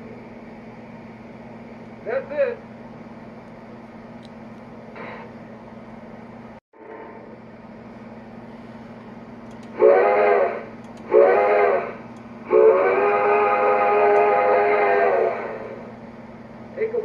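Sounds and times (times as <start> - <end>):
steady low hum: 0.0 - 17.0
steam locomotive whistle blasts: 9.8 - 15.9.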